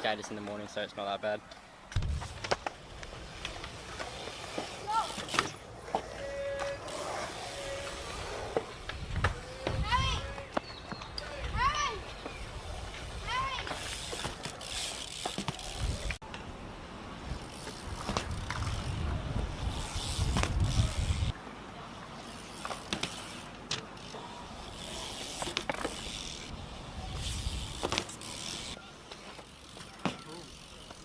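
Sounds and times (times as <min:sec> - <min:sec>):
bike tyres rolling on concrete: 0:00.0 - 0:31.0.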